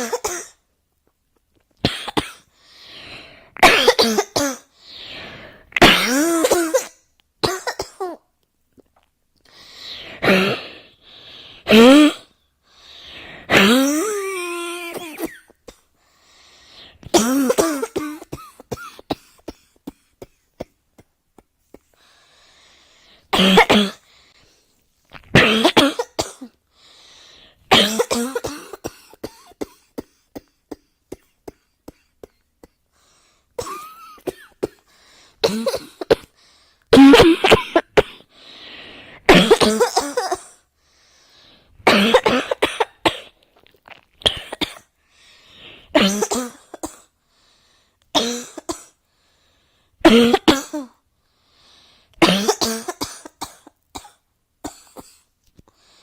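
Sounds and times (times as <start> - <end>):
person coughing: 0.0 - 0.6, 3.6 - 4.7, 5.8 - 8.2, 10.2 - 10.7, 13.5 - 15.8, 17.1 - 21.1, 23.4 - 24.0, 25.3 - 26.6, 27.7 - 32.8, 33.6 - 36.3, 36.9 - 38.3, 39.3 - 40.6, 41.9 - 43.4, 46.0 - 47.1, 50.1 - 51.0, 52.2 - 55.2.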